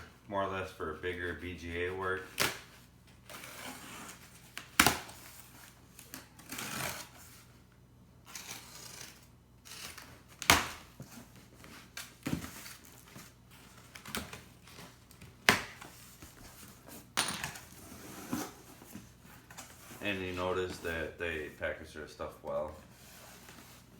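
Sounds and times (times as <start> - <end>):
cardboard rustling: 10.1 - 23.9.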